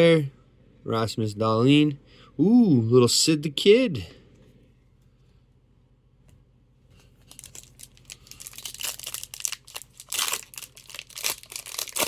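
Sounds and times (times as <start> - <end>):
wrapper tearing and crinkling: 7.2 - 12.0.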